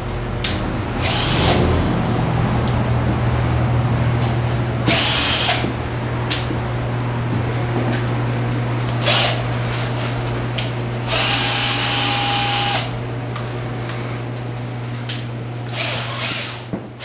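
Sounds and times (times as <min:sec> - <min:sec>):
steady low hum: 0:00.0 - 0:17.0
power drill running: 0:01.0 - 0:01.7, 0:04.8 - 0:05.8, 0:09.0 - 0:09.5, 0:11.0 - 0:13.0, 0:15.6 - 0:16.7.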